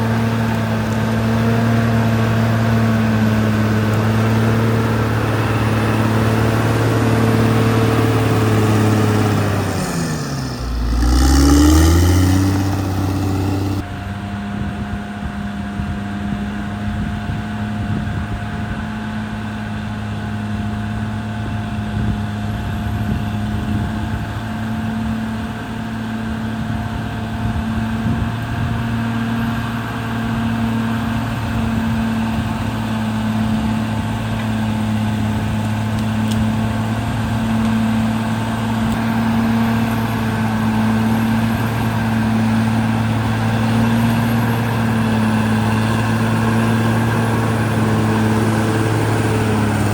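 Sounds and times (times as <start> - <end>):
bulldozer diesel engine running: 0.0 - 13.9, 30.6 - 49.9.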